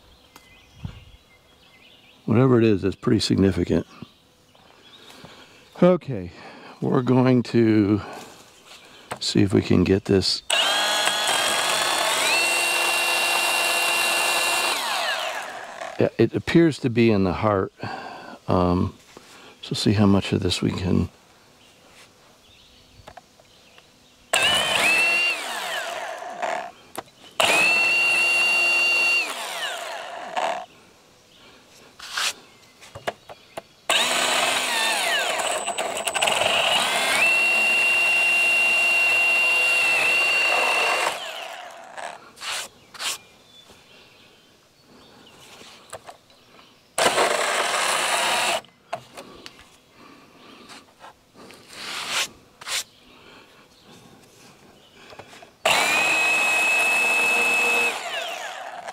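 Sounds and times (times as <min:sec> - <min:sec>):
power drill motor whine: 0:10.5 - 0:16.0, 0:24.3 - 0:26.7, 0:27.4 - 0:30.7, 0:33.9 - 0:42.2, 0:47.0 - 0:48.7, 0:55.6 - 0:58.9.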